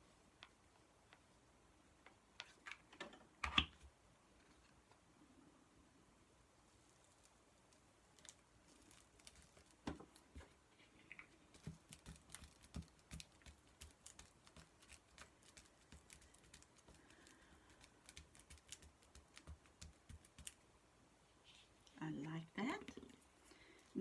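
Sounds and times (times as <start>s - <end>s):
paper pieces clicking and tapping: 11.5s - 20.6s.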